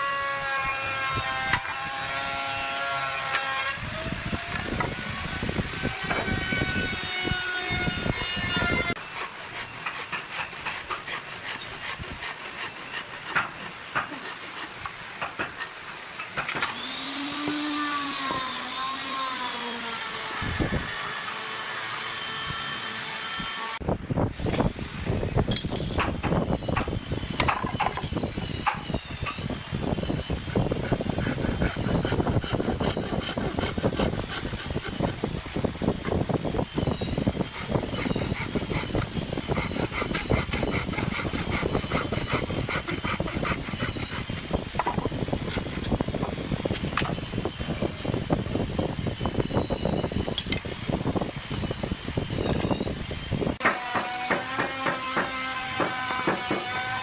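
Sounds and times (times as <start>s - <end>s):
power tools working wood: 0.0s - 57.0s
motor whine: 16.6s - 53.6s.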